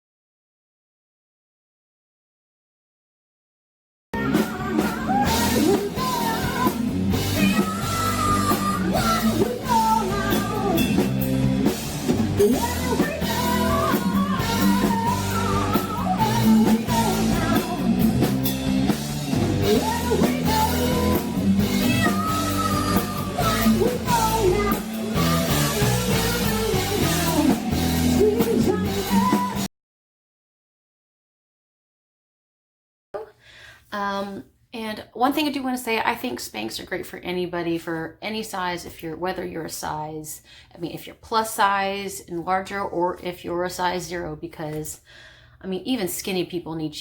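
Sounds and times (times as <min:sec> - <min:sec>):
lead vocal: 0:04.2 - 0:18.6, 0:19.3 - 0:29.7
drum kit: 0:04.2 - 0:29.7
electric guitar: 0:04.2 - 0:29.7.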